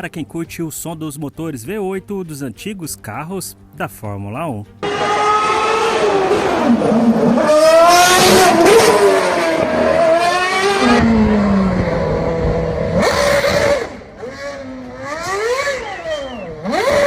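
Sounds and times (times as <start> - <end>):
racing car engine revving: 4.8 - 17.0.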